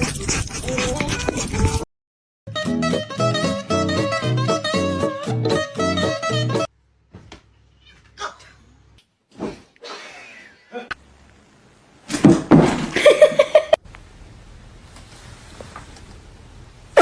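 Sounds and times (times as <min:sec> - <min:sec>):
person laughing loudly: 0:13.0 - 0:13.8.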